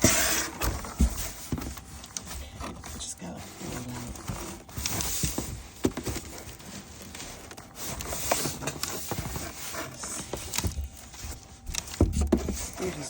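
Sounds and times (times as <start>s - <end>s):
cardboard box scraping and rustling: 0.0s - 13.0s
heavy appliance sliding: 0.0s - 13.0s
thumps and clicks: 3.9s - 12.8s.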